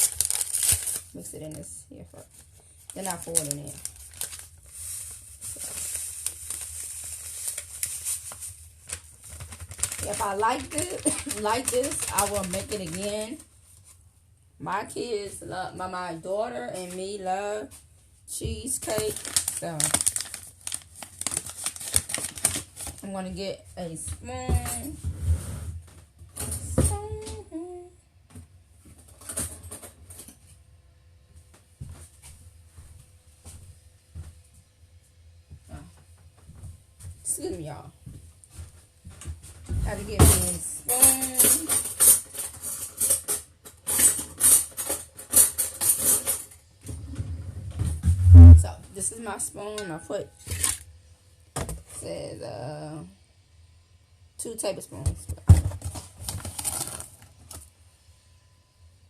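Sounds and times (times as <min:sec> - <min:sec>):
rustling: 0:00.0 - 0:01.6, 0:02.2 - 0:14.0, 0:18.8 - 0:23.0.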